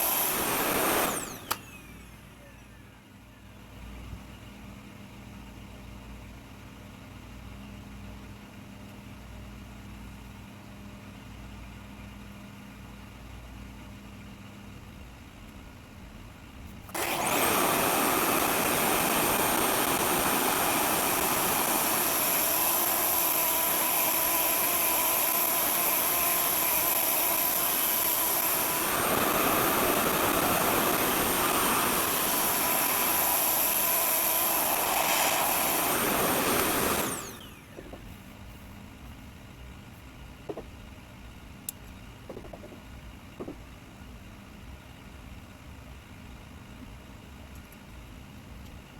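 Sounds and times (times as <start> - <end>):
hair dryer blowing: 0.0 - 2.5, 17.0 - 38.0.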